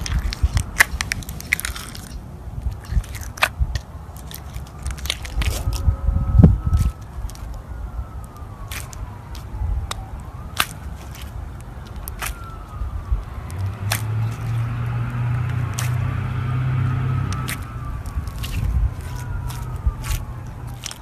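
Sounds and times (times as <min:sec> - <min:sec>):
low steady hum: 0:00.0 - 0:21.0
slime squeezed by hand: 0:00.0 - 0:21.0
sharp clicking pops: 0:08.2 - 0:14.7, 0:15.3 - 0:16.1, 0:17.3 - 0:21.0.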